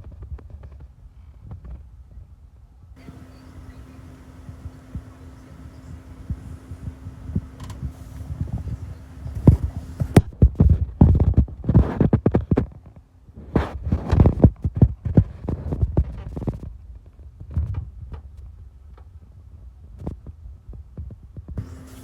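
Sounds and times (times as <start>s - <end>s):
faint steady hum: 3.0s - 10.7s, 21.6s - 22.0s.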